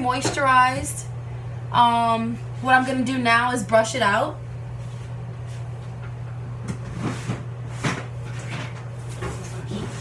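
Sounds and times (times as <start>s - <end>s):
low electrical hum: 0.0s - 10.0s
handling rustles and scrapes: 6.8s - 10.0s.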